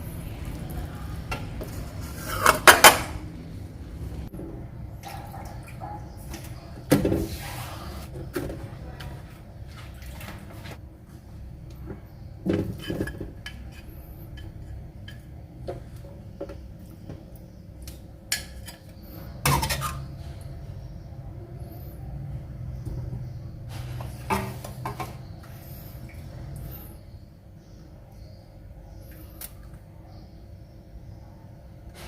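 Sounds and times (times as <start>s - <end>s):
dishes and metal utensils clinking: 12.4s - 15.4s, 18.3s - 20.2s.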